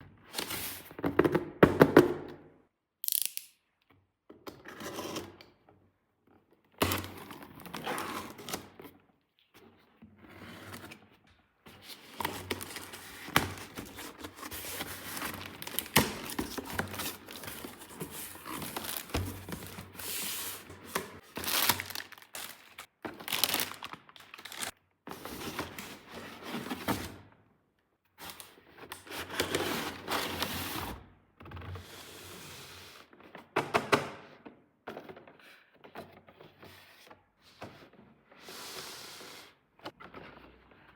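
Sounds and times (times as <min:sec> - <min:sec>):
plastic toy pieces clicking: 0:03.0 - 0:03.6
packaging rustling: 0:12.0 - 0:24.7.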